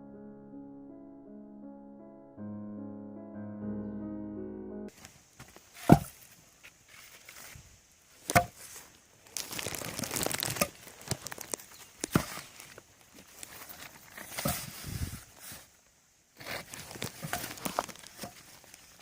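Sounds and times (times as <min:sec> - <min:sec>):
piano music: 0:00.0 - 0:04.9
rustling crinkling handling noise: 0:05.0 - 0:15.8, 0:16.4 - 0:19.0.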